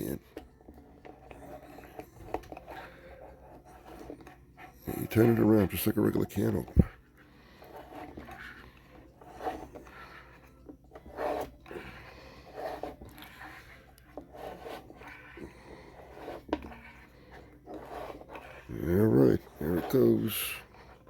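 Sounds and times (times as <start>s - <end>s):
can opener scraping metal: 0.0s - 21.0s.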